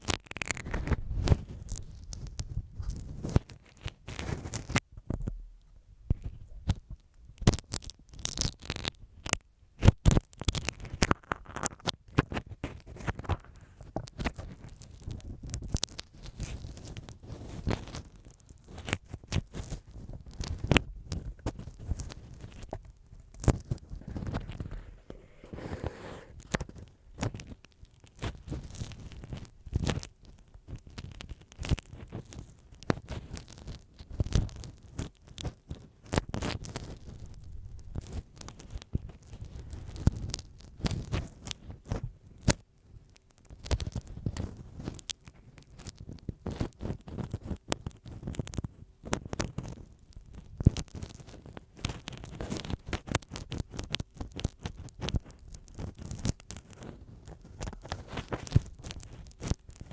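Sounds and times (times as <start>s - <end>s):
ear pick scraping on tape: 10.6s - 37.4s, 50.7s - 59.9s.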